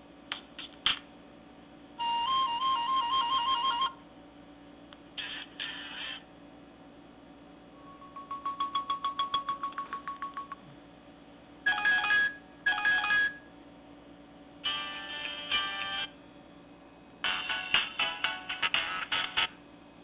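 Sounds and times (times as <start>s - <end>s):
fast phone beeping: 7.8s - 10.6s.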